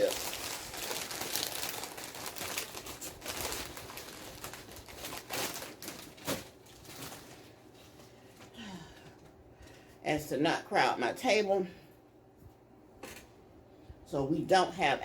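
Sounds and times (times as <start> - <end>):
plastic chip bag crinkling: 0.0 - 7.6.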